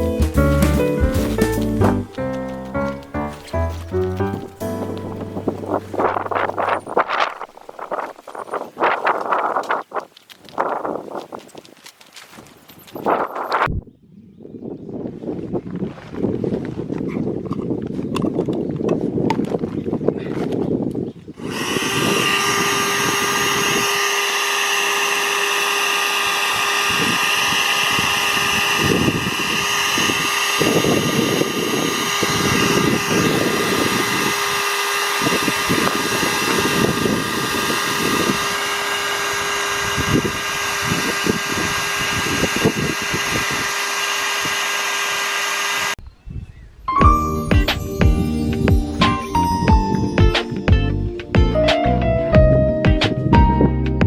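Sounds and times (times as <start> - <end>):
motor running: 0.0 - 7.5, 21.4 - 46.0.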